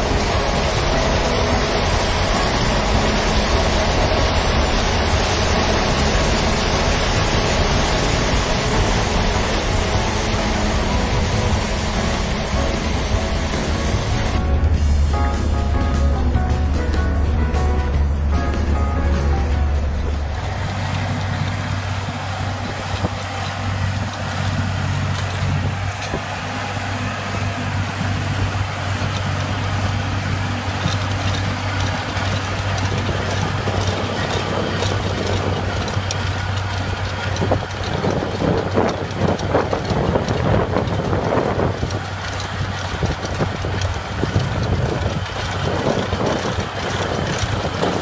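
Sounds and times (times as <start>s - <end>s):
heavy machine engine running: 0.0s - 48.0s
mechanical clattering: 27.3s - 48.0s.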